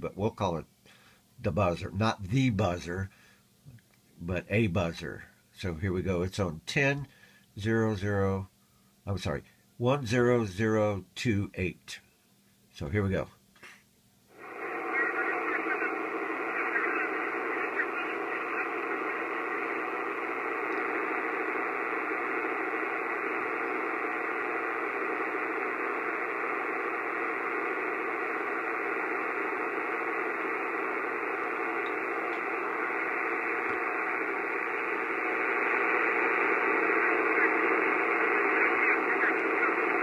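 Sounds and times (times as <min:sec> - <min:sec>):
faint fast-warbling radio signal: 0:14.3 - 0:40.0
radio static hiss: 0:14.3 - 0:40.0.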